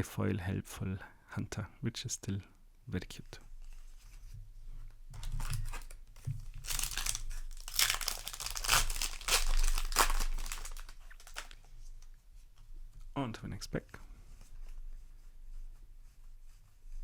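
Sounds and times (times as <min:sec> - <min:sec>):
foil wrapper crinkling and tearing: 0:05.2 - 0:11.7.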